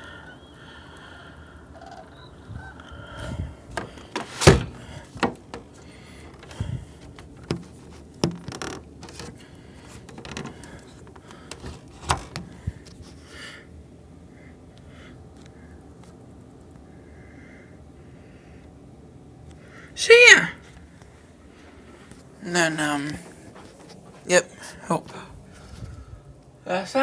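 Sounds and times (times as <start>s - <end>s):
sharp clicks knocks and rattles: 3.7s - 13.0s.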